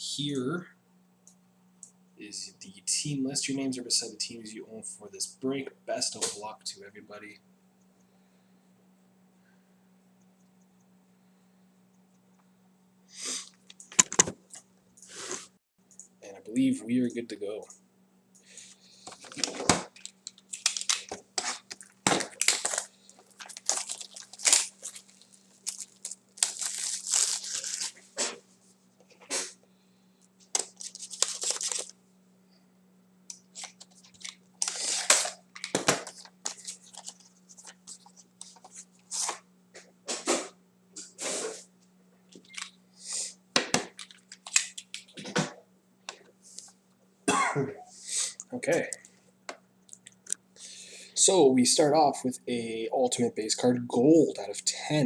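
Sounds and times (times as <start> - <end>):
faint steady hum: 0.0 - 55.0
packaging being torn and crinkled: 19.2 - 28.0, 30.5 - 31.9, 33.5 - 38.6, 43.9 - 45.2.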